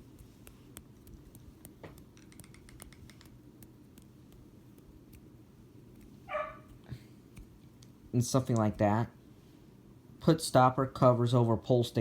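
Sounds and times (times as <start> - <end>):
low steady hum: 0.0 - 12.0
small clicks: 0.2 - 4.4.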